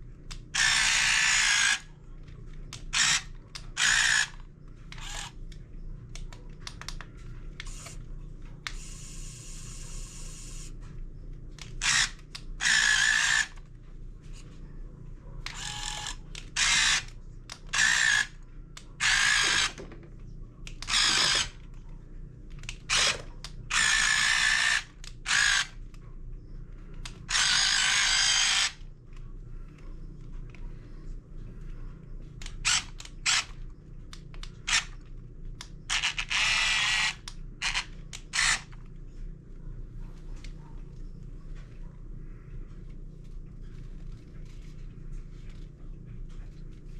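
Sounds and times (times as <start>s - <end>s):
small electric gear motors whirring: 0.6s - 1.8s, 2.9s - 5.4s, 7.6s - 8.0s, 8.7s - 10.7s, 11.8s - 13.6s, 15.5s - 17.1s, 17.7s - 18.4s, 19.0s - 19.8s, 20.8s - 21.6s, 22.9s - 25.7s, 27.3s - 28.8s, 35.9s - 38.7s.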